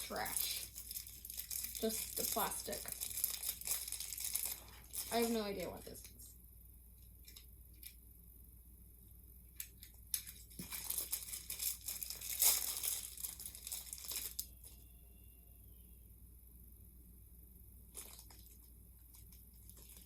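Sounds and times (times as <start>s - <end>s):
plastic packaging crinkling: 0.0s - 6.1s, 9.8s - 14.8s, 17.9s - 20.0s.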